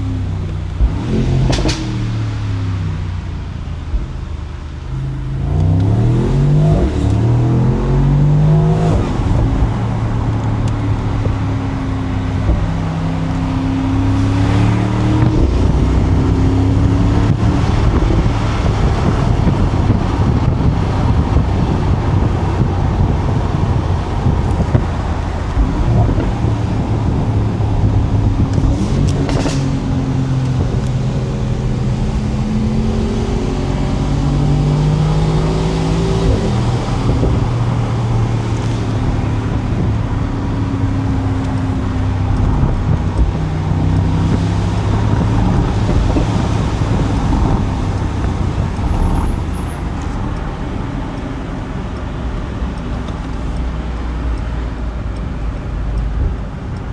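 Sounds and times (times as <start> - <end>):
car engine under way: 0.0 - 56.9
road and wind noise: 0.0 - 56.9
short sharp crack: 1.4 - 2.2.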